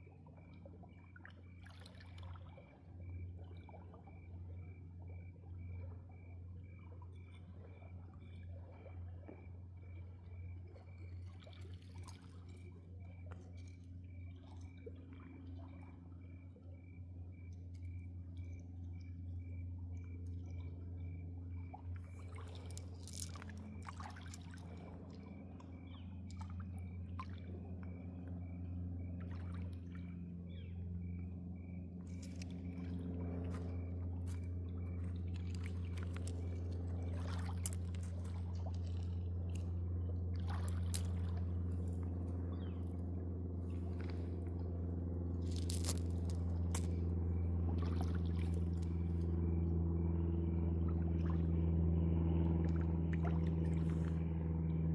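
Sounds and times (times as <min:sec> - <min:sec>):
steady low hum: 0:00.0 - 0:54.9
water trickling and splashing: 0:00.7 - 0:02.6, 0:11.0 - 0:13.8, 0:22.0 - 0:27.6, 0:32.1 - 0:42.3, 0:45.4 - 0:47.0, 0:47.7 - 0:49.2.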